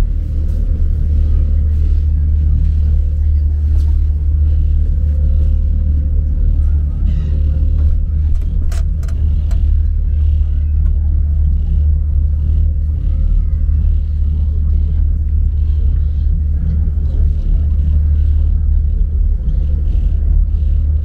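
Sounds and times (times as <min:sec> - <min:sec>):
ferry engine drone: 0:00.0 - 0:21.0.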